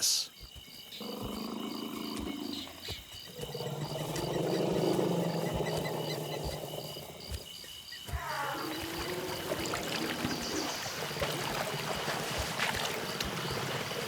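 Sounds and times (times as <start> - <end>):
insects chorus: 0.0 - 14.0
elephant rumbling call: 8.1 - 11.6.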